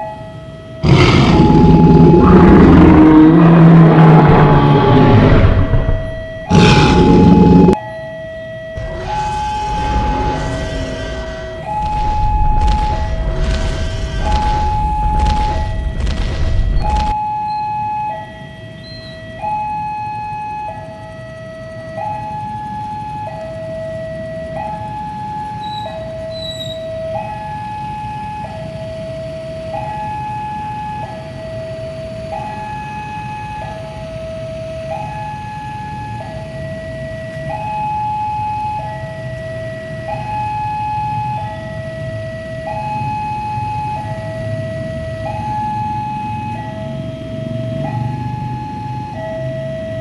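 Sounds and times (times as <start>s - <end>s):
continuous low rumble: 0.8s - 7.8s, 8.8s - 17.2s.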